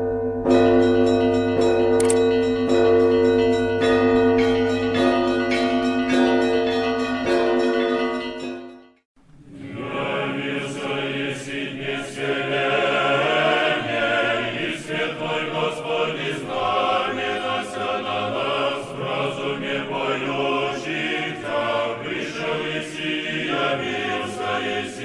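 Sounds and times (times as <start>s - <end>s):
choir singing slow chant: 9.3s - 25.0s.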